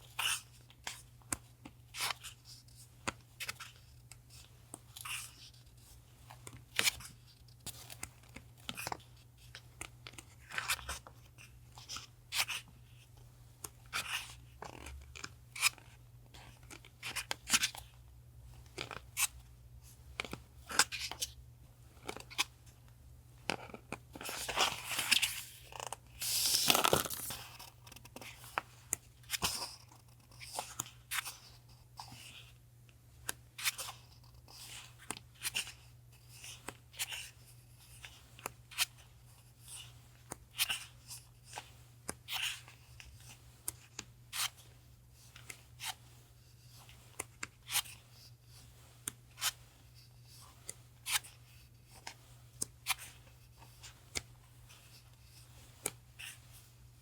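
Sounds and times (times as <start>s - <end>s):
packaging crackling and tearing: 25.8s - 27.8s.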